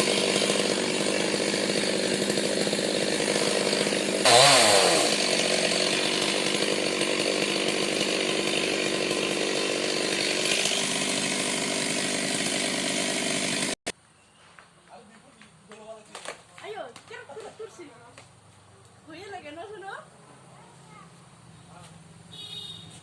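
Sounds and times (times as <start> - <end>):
chainsaw cutting a tree: 0.0 - 13.8.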